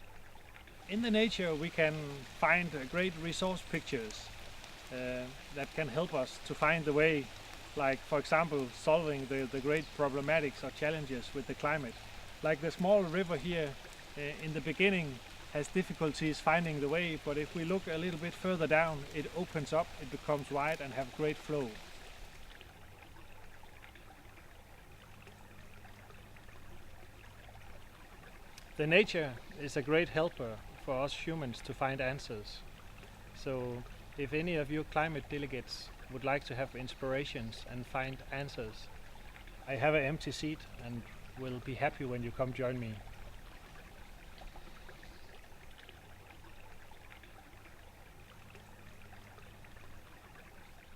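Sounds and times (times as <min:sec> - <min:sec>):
small river flowing: 0:00.0 - 0:50.9.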